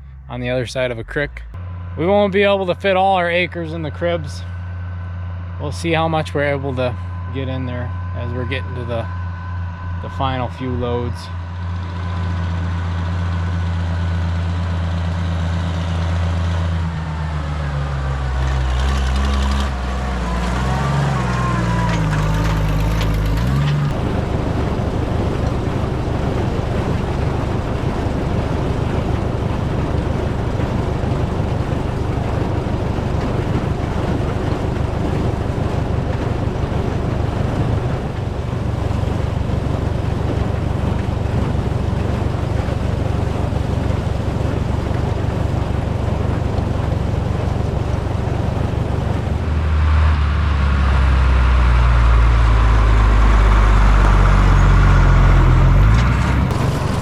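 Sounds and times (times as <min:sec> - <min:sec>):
tractor engine running: 0:00.0 - 0:57.0
farm machinery rattling: 0:10.0 - 0:49.4, 0:54.3 - 0:57.0.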